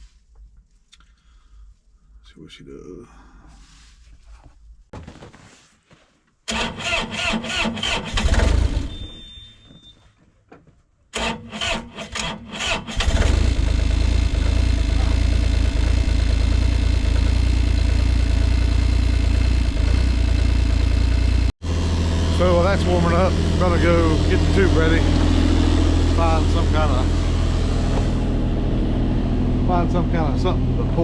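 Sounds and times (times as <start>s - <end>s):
diesel engine cranking: 6.5s - 9.3s, 11.1s - 31.0s
short high beep: 8.9s - 10.0s
diesel engine idling: 13.0s - 31.0s.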